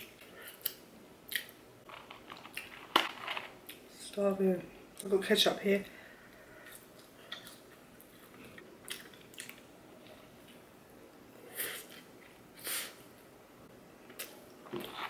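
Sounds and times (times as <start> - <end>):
person chewing food: 0.0 - 3.8, 6.6 - 10.7.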